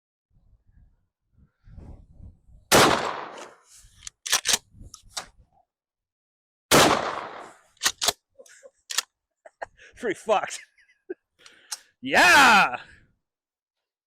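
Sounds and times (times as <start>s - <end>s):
shotgun blasts with echo: 2.7s - 3.6s, 6.7s - 7.6s
sharp clicks: 3.4s - 5.3s, 7.8s - 8.2s, 8.8s - 9.1s.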